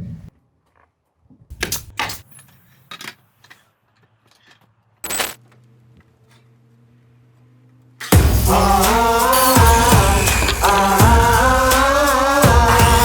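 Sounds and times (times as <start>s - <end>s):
hard objects clicking and clinking: 8.0s - 12.0s.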